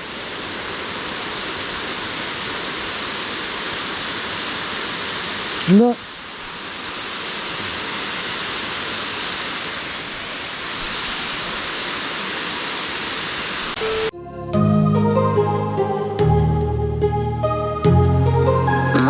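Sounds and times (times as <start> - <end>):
waterfall roaring: 0.0 - 14.1
music: 13.8 - 19.0.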